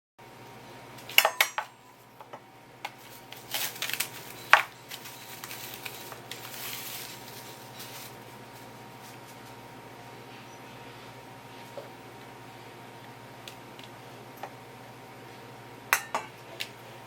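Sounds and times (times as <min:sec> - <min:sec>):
steady low hum: 0:00.2 - 0:17.0
dishes and utensils clinking: 0:16.0 - 0:16.4.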